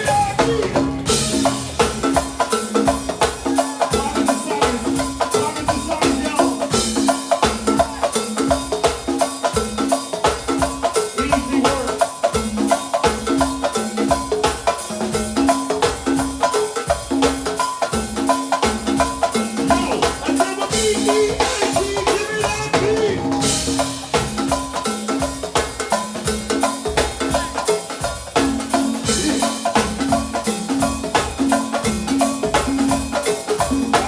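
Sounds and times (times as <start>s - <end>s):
bass line: 0.0s - 2.4s, 19.7s - 24.3s, 29.0s - 30.1s
drum kit groove: 0.0s - 34.0s.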